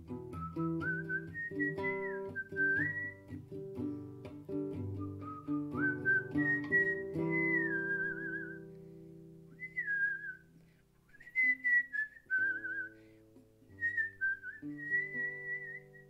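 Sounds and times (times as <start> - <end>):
acoustic guitar chords: 0.0 - 9.8
person whistling a melody: 0.2 - 8.9, 9.5 - 16.0.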